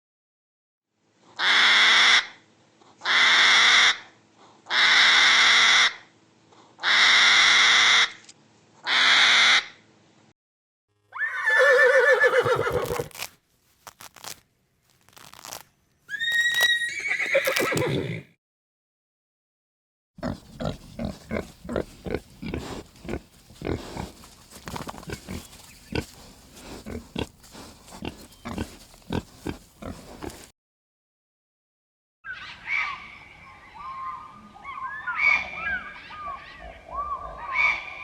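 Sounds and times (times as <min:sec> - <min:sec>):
higher-pitched animal call: 0:16.1 - 0:18.2
harsh raspy animal calls: 0:20.2 - 0:30.5.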